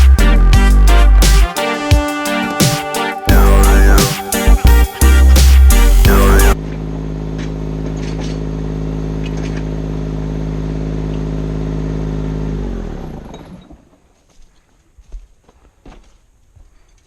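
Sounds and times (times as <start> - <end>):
engine idling and winding down: 3.3 - 13.9.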